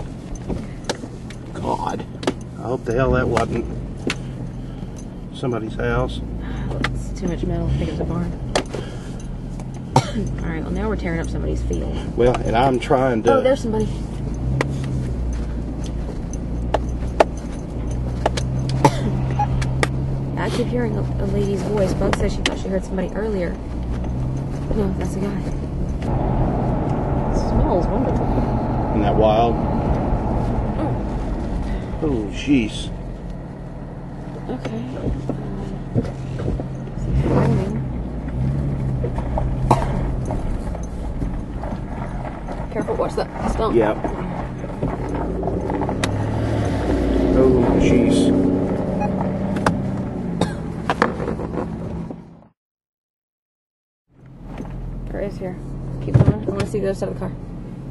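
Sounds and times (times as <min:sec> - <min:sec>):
rattles and knocks from bumps: 0:00.0 - 0:05.1, 0:06.7 - 0:26.1, 0:34.3 - 0:46.6
vehicle engine running low: 0:00.0 - 0:52.5.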